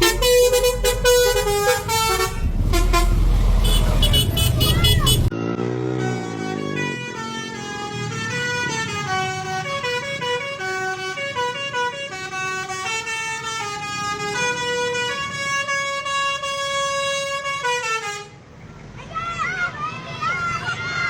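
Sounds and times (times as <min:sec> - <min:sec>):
bus engine running: 0:00.0 - 0:05.3
musical bus air horn: 0:00.0 - 0:18.4.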